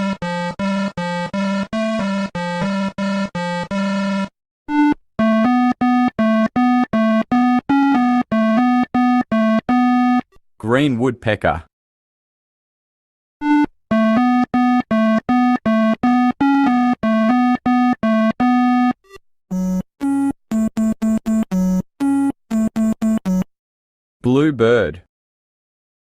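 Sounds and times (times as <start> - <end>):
synthesizer beeps: 4.7 - 10.4, 13.4 - 23.5.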